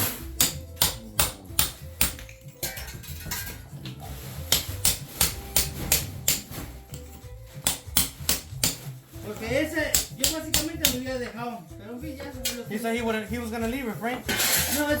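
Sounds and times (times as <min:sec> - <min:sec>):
hammer chipping a wall: 0:04.5 - 0:06.6, 0:07.6 - 0:08.9, 0:09.7 - 0:11.2.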